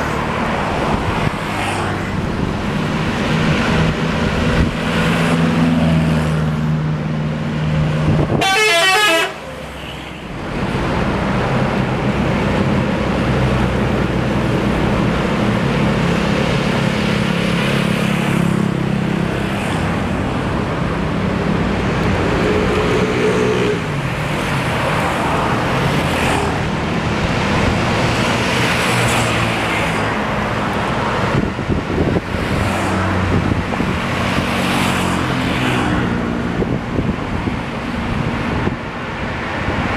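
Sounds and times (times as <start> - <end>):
buses running: 0.0 - 39.9
multi-tone musical bus horns: 8.3 - 10.3.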